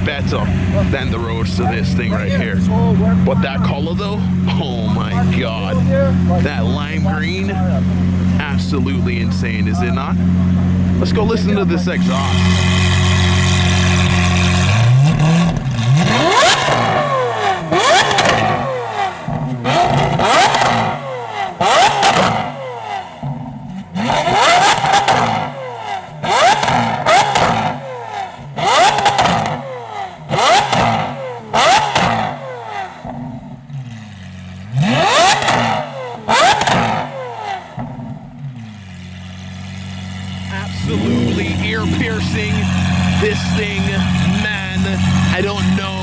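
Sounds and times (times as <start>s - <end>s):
sports car engine revving: 0.0s - 46.0s.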